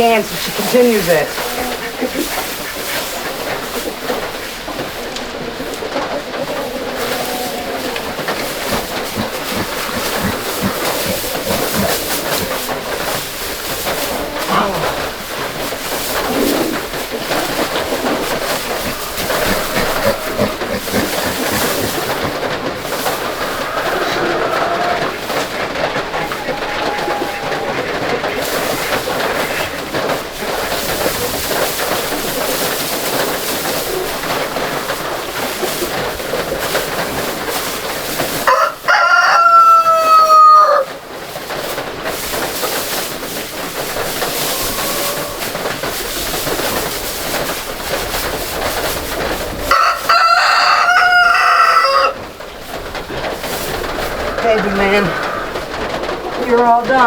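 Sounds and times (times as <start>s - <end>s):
steady hiss: 0.0s - 38.5s, 40.9s - 49.7s
faint fowl calls: 0.0s - 57.0s
rooster crowing: 17.4s - 22.2s, 22.9s - 29.5s, 38.5s - 41.0s, 44.4s - 45.6s, 49.7s - 52.2s.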